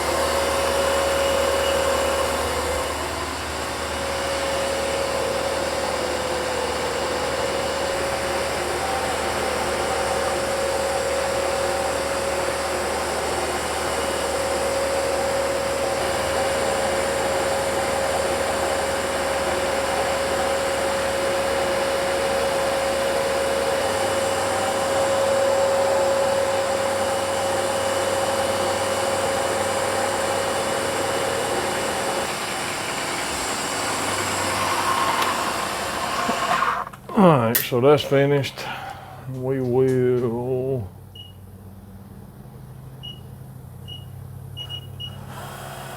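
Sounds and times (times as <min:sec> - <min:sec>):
rushing mechanical noise: 0:00.0 - 0:40.9
milling cutter whine: 0:00.0 - 0:41.3.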